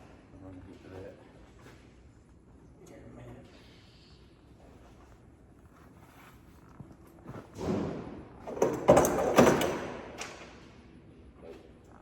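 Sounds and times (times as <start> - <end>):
hard objects knocking and clattering: 8.5 - 9.9.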